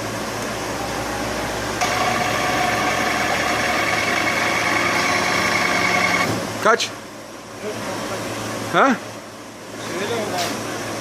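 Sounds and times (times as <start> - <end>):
steady whine: 0.4 - 6.4
machine drive humming: 1.8 - 6.3.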